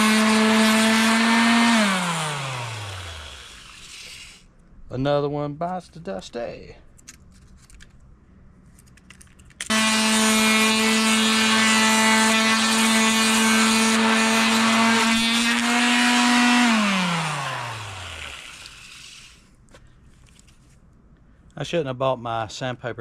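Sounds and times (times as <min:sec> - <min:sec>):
power sander sanding wood: 0:00.0 - 0:04.4, 0:09.7 - 0:19.4.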